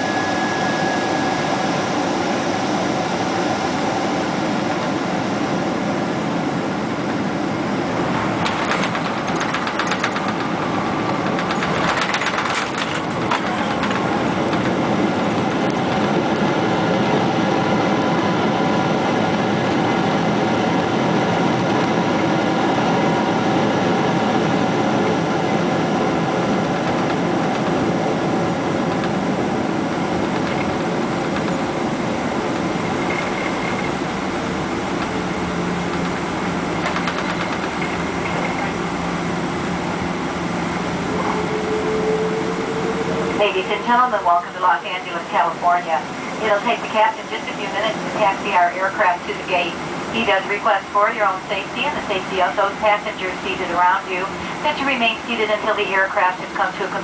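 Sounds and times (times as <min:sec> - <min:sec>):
jet engine and airflow noise: 0:00.0 - 0:57.0
landing gear rattling on runway: 0:08.4 - 0:16.1, 0:35.9 - 0:38.8.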